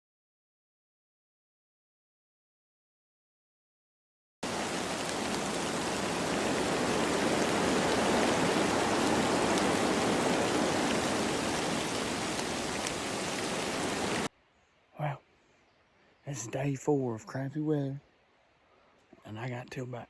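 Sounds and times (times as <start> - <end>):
steady rain falling: 4.4 - 14.3.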